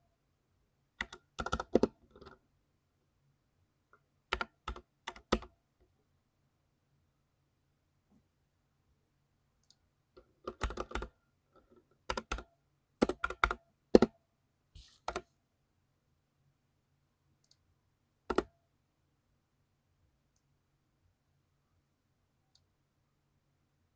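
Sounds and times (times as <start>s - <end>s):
mechanical keyboard typing: 1.0s - 2.4s, 4.3s - 5.5s, 10.5s - 11.1s, 12.1s - 14.1s, 18.3s - 18.5s.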